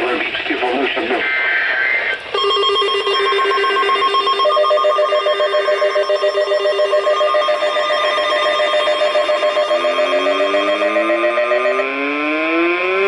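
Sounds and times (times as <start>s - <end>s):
trilling electronic alert tones: 2.3s - 13.0s.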